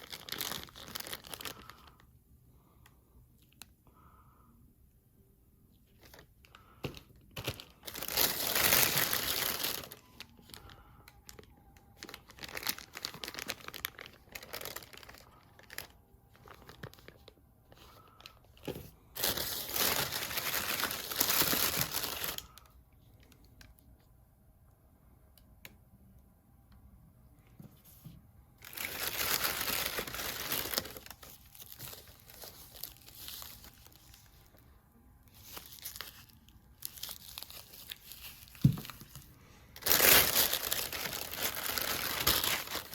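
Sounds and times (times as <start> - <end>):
packaging ripping: 0.0 - 1.9, 7.4 - 11.4, 12.0 - 17.3, 19.2 - 22.7, 28.6 - 34.5, 39.8 - 42.9
plastic packaging crinkling: 0.0 - 2.1, 5.8 - 23.8, 27.8 - 42.9.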